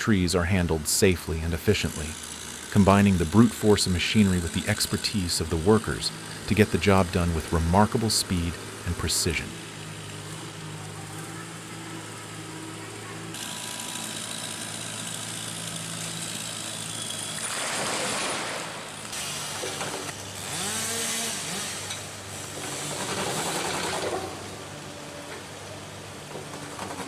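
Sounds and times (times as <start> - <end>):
machinery engine running: 0.0 - 17.4
saw-like cutting noise: 0.2 - 25.6.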